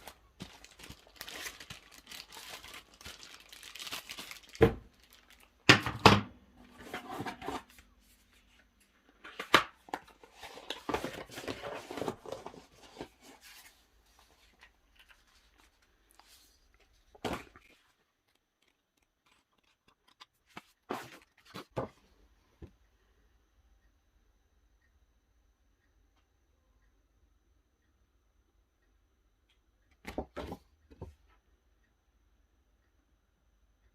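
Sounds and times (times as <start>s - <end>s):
packaging rustling and tearing: 0.0s - 5.5s, 17.2s - 21.7s.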